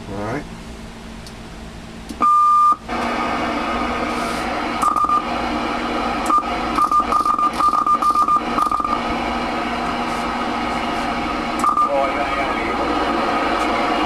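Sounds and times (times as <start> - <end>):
short beeps: 2.2 - 2.8, 4.8 - 5.3, 6.3 - 9.0, 11.6 - 12.0
radio beep: 4.8 - 5.3, 6.3 - 9.0, 11.6 - 12.6
radio static: 6.3 - 9.2, 10.0 - 14.0.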